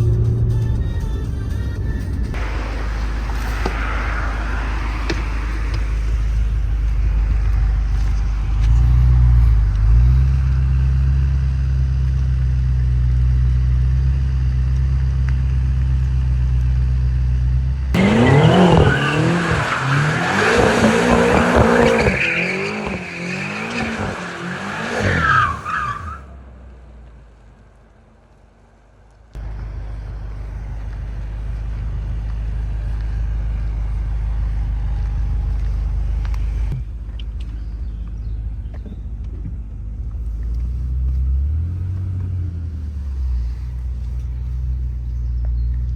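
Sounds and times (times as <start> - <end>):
car engine droning and revving: 0.0 - 45.9
tyre squeal: 0.1 - 11.1, 18.0 - 26.4.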